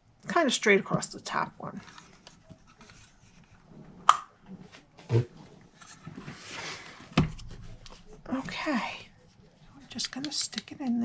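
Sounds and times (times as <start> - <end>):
paper rustling: 1.8 - 3.8.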